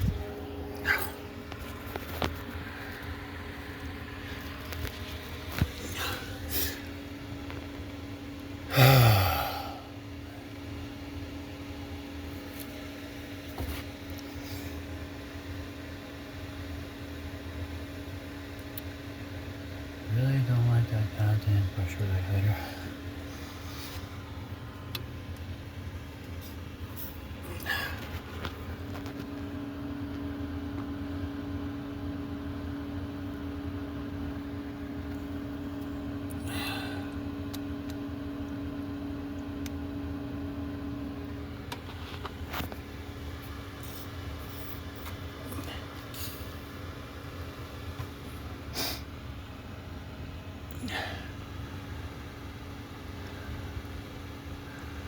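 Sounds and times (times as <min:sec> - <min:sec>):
steady hum: 0:00.0 - 0:55.0
man sighing: 0:05.8 - 0:06.9, 0:08.7 - 0:09.9, 0:27.4 - 0:28.0, 0:36.4 - 0:37.2, 0:50.7 - 0:51.4.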